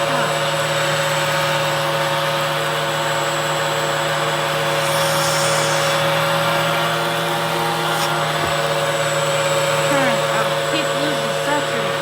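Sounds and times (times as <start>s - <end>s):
vacuum cleaner running: 0.0s - 12.0s
brief airy hiss: 4.7s - 7.1s.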